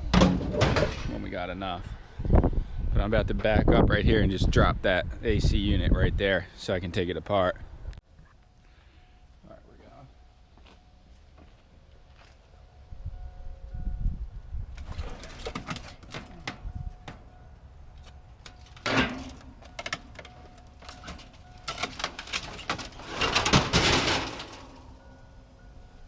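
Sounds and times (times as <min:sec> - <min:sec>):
scraping metal crashes: 0:00.0 - 0:01.2, 0:18.6 - 0:25.0
metal scrap clanking: 0:18.4 - 0:25.0.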